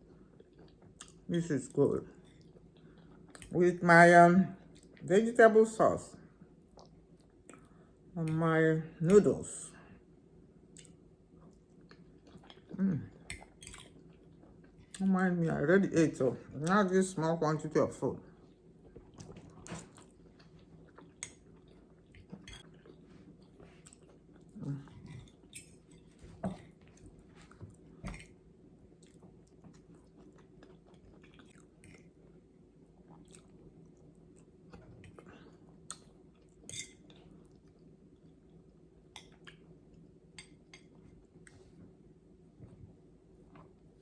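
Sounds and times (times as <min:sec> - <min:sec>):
person chewing food: 0:00.0 - 0:01.3, 0:02.2 - 0:03.5, 0:06.6 - 0:07.9, 0:10.7 - 0:15.0, 0:18.4 - 0:41.8
faint steady hum: 0:00.0 - 0:44.0.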